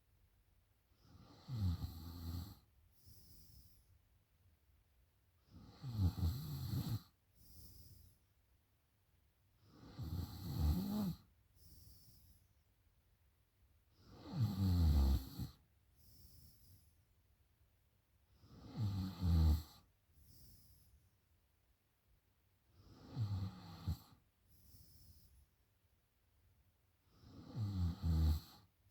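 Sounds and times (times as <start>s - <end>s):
woman snoring loudly: 1.2s - 2.6s, 5.6s - 7.0s, 9.8s - 11.2s, 14.2s - 15.5s, 18.6s - 19.7s, 27.3s - 28.6s
soft breath out: 11.6s - 12.5s, 20.2s - 21.0s.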